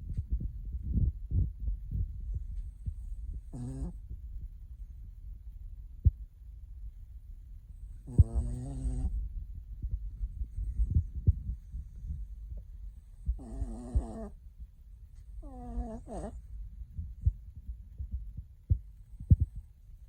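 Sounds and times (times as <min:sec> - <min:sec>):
dog snoring: 0:03.3 - 0:04.0, 0:08.0 - 0:09.2, 0:13.2 - 0:14.4, 0:15.4 - 0:16.5.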